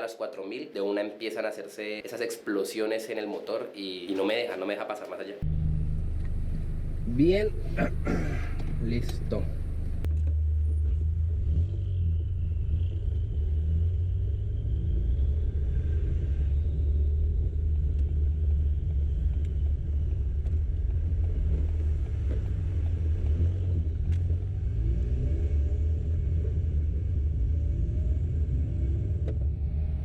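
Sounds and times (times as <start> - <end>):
car engine and road rumble: 5.4 - 30.0.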